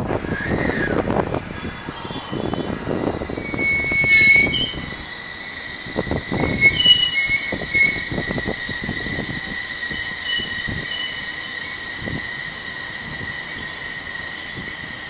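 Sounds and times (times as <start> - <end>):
high-pitched wheel squeal: 0.0 - 14.8
train rumbling and rattling: 0.0 - 15.0.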